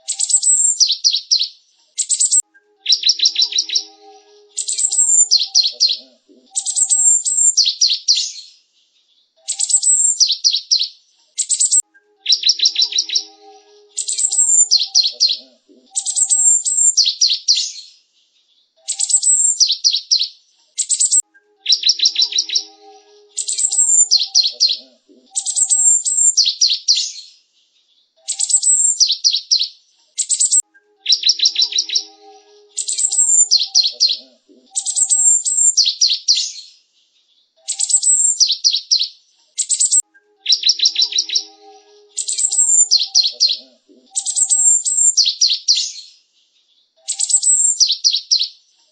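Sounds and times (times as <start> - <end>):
bird singing high chirps and trills: 0.0 - 48.6.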